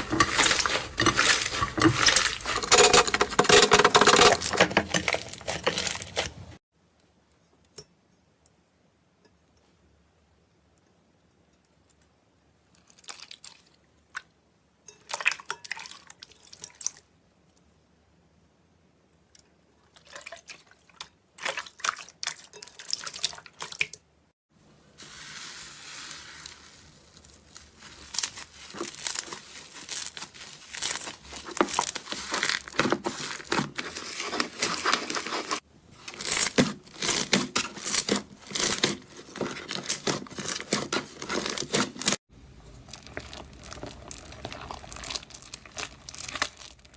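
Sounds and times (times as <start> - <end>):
slime crackling and crinkling: 0.0 - 6.6, 25.0 - 46.9.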